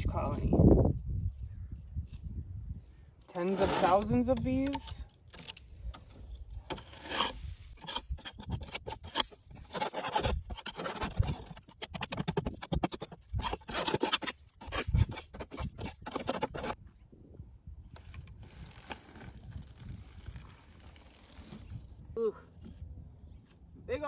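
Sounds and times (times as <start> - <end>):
scraping and scratching in beehive: 3.3 - 16.8, 18.0 - 21.9.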